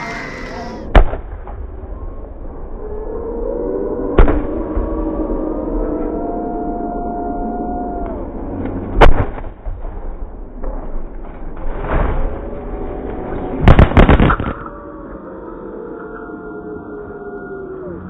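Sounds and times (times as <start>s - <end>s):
loud crashing impacts: 13.6s - 14.6s.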